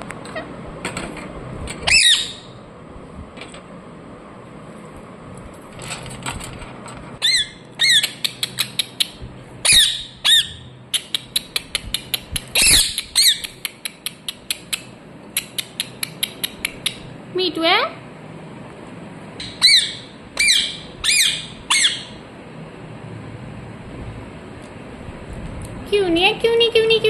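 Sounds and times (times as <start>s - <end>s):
parrot squawks: 1.9s - 2.6s, 7.2s - 8.3s, 9.6s - 10.7s, 19.4s - 22.2s.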